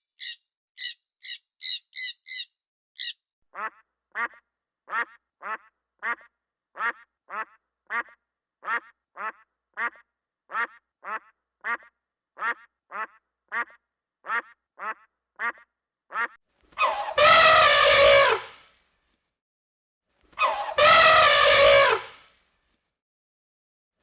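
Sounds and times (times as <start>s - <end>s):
duck quacking: 0.0s - 17.6s
loud drawn-out call: 16.8s - 18.5s, 20.4s - 22.1s.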